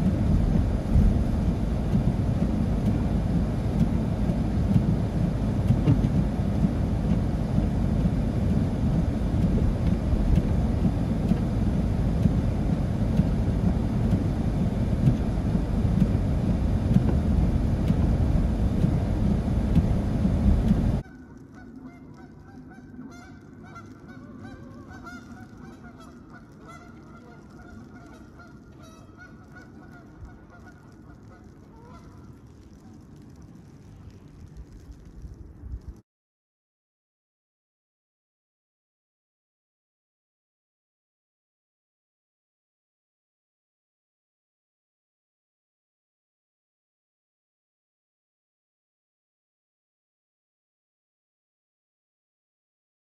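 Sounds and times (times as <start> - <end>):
loud low rumbling: 0.0 - 21.5
geese honking: 21.0 - 32.4.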